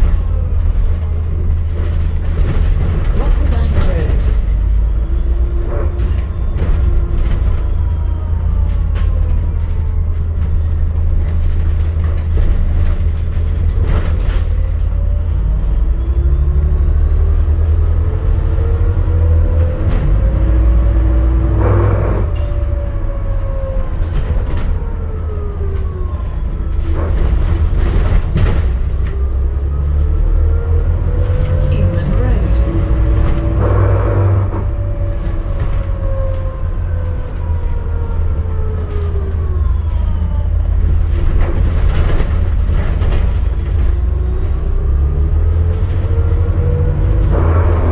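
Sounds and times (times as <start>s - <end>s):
knocks and rattles: 0.0s - 4.7s, 23.6s - 29.4s, 40.8s - 44.6s
bus engine rumble and whine: 0.0s - 47.9s.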